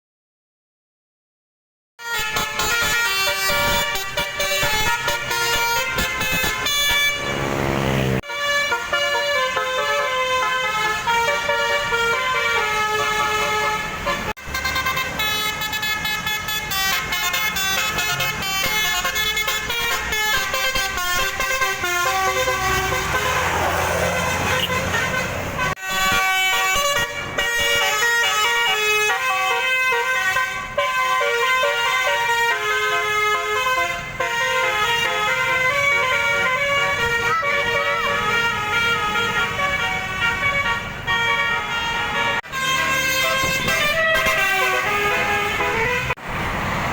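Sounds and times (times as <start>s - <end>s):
bus air horn tune: 2.0s - 46.2s.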